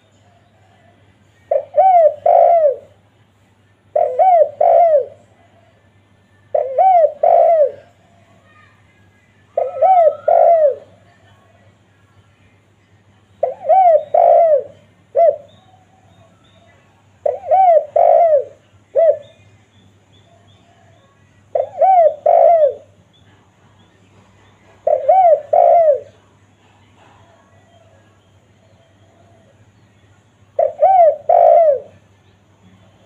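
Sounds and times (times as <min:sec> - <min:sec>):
dove cooing: 0:01.5 - 0:03.0, 0:03.9 - 0:05.9, 0:06.5 - 0:08.4, 0:09.6 - 0:11.0, 0:13.4 - 0:16.4, 0:17.2 - 0:19.4, 0:20.3 - 0:23.0, 0:24.4 - 0:29.6, 0:30.5 - 0:32.1.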